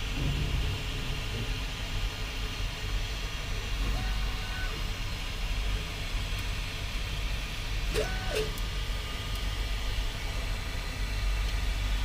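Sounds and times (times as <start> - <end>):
three d printer humming: 3.4 - 12.0
stepper motor whine: 7.7 - 11.3.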